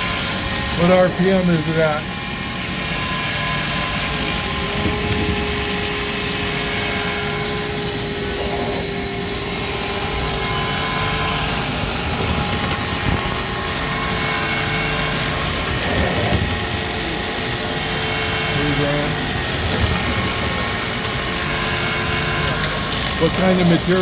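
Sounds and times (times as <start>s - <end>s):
machine mechanical hum: 0.0s - 24.0s
spindle whine: 0.0s - 24.0s.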